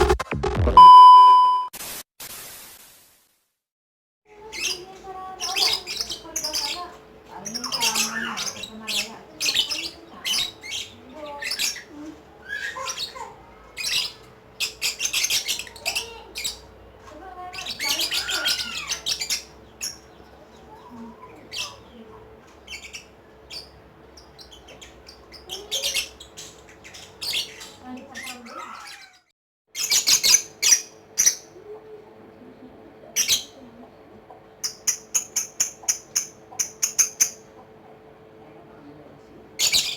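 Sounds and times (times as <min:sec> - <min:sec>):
lovebird chattering: 0:04.4 - 0:16.8, 0:17.4 - 0:29.1, 0:29.8 - 0:31.6, 0:34.3 - 0:38.0, 0:39.6 - 0:39.9.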